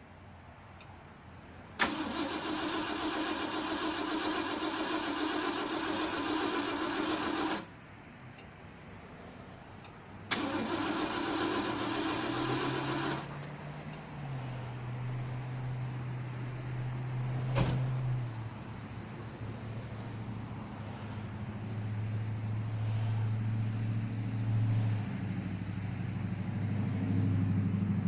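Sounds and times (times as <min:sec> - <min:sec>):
car starter motor cranking: 0:01.8 - 0:07.7, 0:10.3 - 0:13.5.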